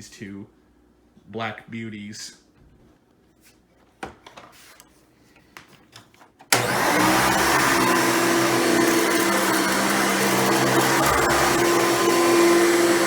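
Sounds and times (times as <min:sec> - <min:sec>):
vacuum cleaner motor whine: 0:06.5 - 0:13.0.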